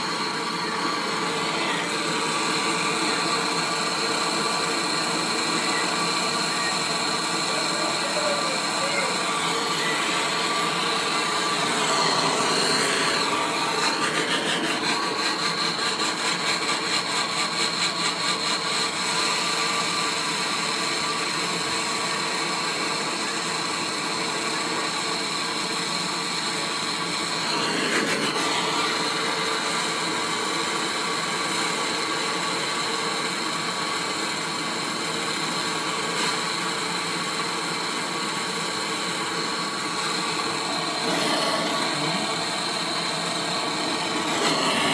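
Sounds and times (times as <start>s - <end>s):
fast pulsing: 0.0s - 17.0s, 39.8s - 44.9s
power tool running: 0.0s - 44.9s.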